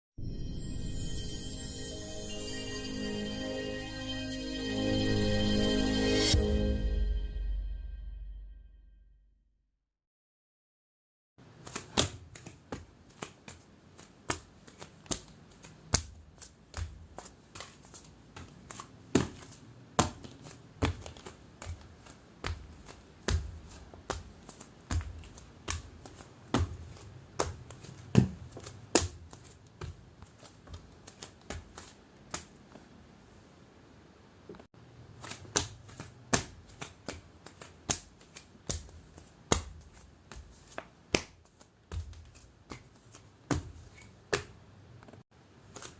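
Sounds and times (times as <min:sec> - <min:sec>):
footsteps walking: 0:13.1 - 0:32.9, 0:35.2 - 0:44.5.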